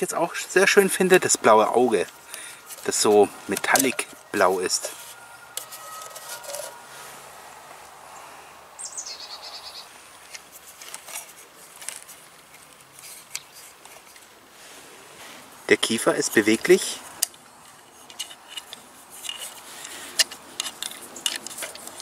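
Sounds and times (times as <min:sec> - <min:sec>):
high falling chirp: 0:08.2 - 0:09.9
plastic toy clicks: 0:18.1 - 0:22.0.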